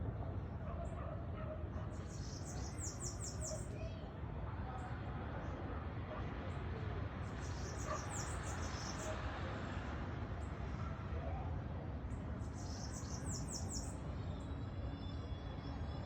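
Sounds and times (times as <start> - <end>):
small birds chirping: 1.9 - 4.1, 7.3 - 9.2, 12.1 - 16.0.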